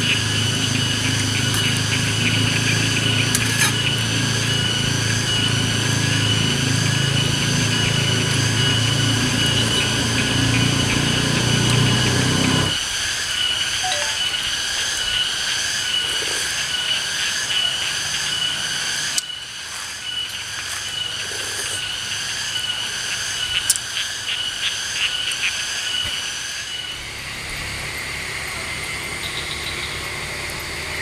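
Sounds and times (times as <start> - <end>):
high-pitched drone: 13.8 - 14.4.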